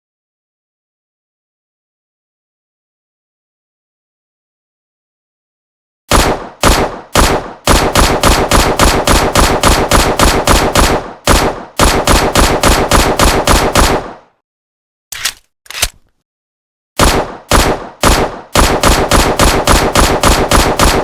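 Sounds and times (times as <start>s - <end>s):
pistol gunshots: 6.1s - 14.3s, 17.0s - 21.0s.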